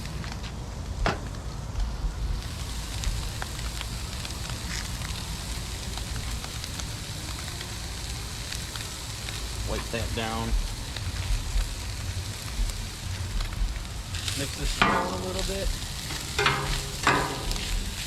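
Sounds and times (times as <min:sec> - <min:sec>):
low rumble: 0:00.0 - 0:05.6, 0:10.5 - 0:18.0
chicken sizzling on a griddle: 0:00.0 - 0:18.0.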